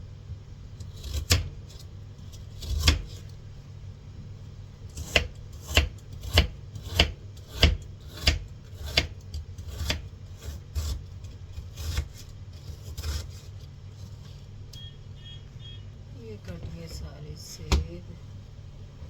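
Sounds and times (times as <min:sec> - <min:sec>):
knife chopping on cutting board: 0:00.9 - 0:01.5, 0:02.6 - 0:03.2, 0:05.0 - 0:11.0.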